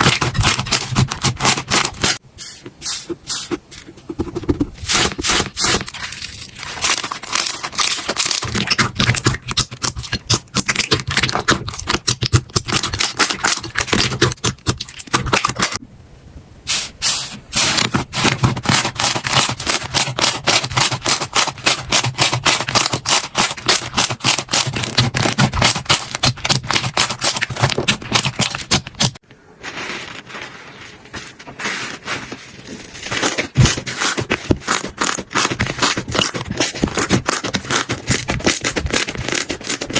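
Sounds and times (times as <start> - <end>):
slime crackling and popping: 5.6 - 15.6.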